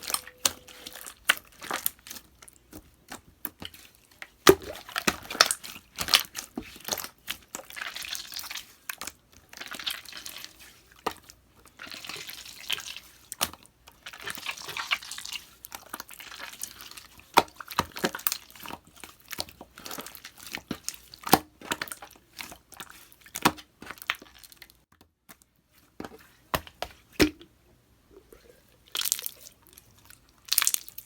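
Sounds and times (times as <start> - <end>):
slime squishing and popping: 30.5 - 31.0.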